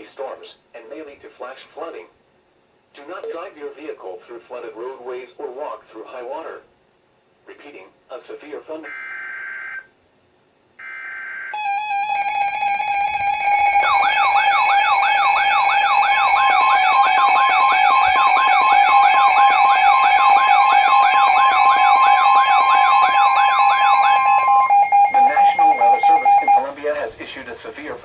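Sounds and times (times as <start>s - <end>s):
siren yelp: 10.8s - 26.6s
steady electronic alert tone: 11.6s - 26.6s.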